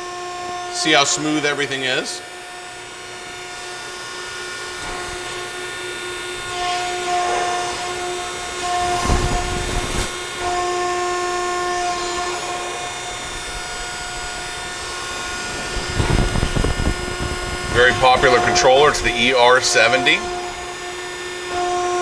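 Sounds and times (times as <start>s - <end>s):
hydraulic press humming: 0.0s - 22.0s
heavy low rumble: 12.4s - 20.9s.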